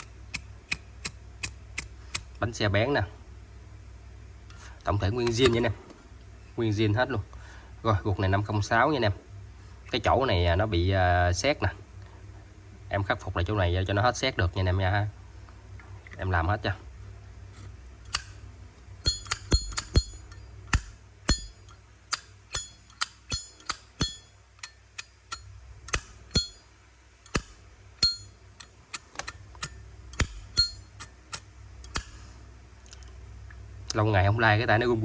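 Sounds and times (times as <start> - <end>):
lighter metal case clicking: 5.2 - 5.7, 19.1 - 26.5, 27.3 - 32.2.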